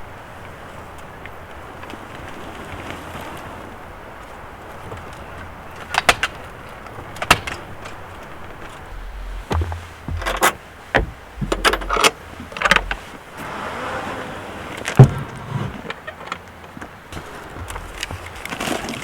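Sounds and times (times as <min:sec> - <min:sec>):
sharp loud knock: 0:08.9 - 0:12.0
gear knocking and rattling: 0:08.9 - 0:13.2.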